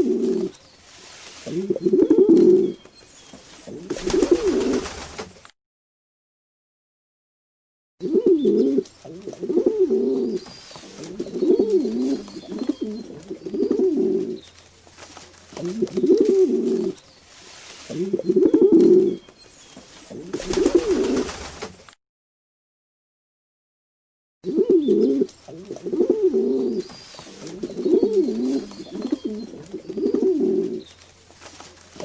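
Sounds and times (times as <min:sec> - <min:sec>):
pigeons cooing: 0:00.0 - 0:00.6, 0:01.4 - 0:05.0, 0:08.0 - 0:14.5, 0:15.5 - 0:17.0, 0:17.8 - 0:19.3, 0:20.1 - 0:21.4, 0:24.4 - 0:30.9.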